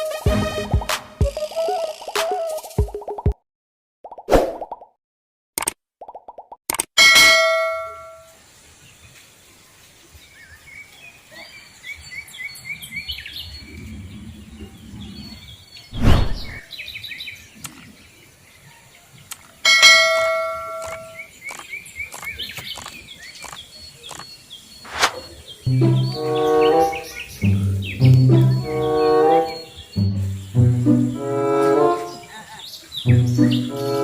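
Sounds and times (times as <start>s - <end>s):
birds chirping: 11.5s - 18.6s, 19.3s - 34.0s.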